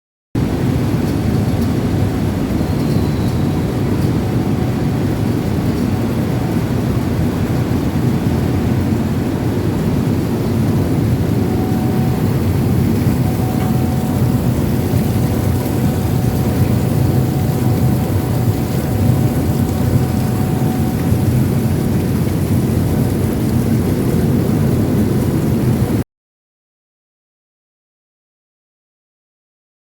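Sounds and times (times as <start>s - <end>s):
washing machine rumbling: 0.4s - 26.0s
faint thin whine: 11.4s - 21.6s.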